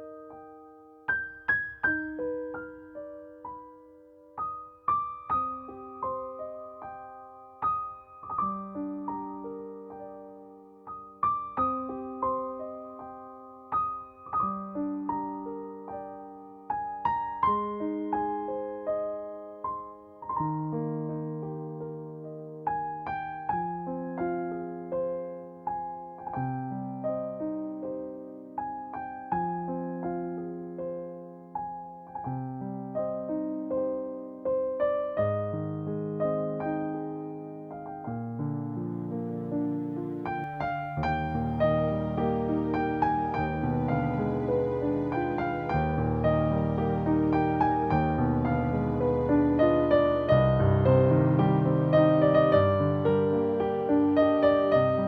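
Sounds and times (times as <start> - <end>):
gentle solo piano piece: 0.0 - 55.0.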